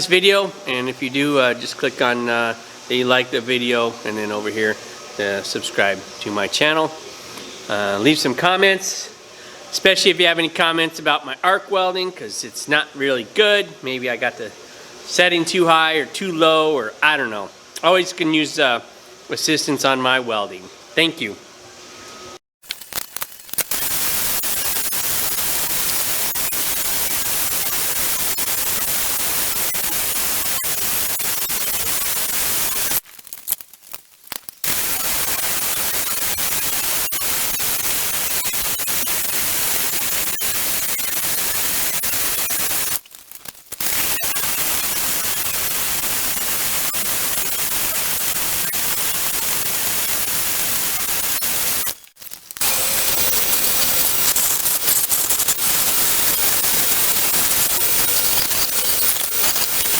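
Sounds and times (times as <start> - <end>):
steady hissing noise: 0.0 - 21.6, 22.9 - 33.0, 43.7 - 59.9.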